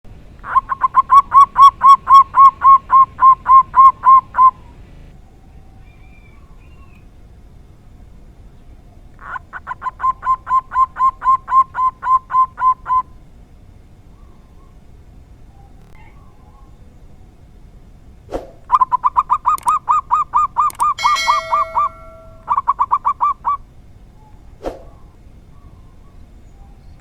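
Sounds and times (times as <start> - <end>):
dove cooing: 0.4 - 5.1, 9.2 - 13.2, 18.7 - 23.6.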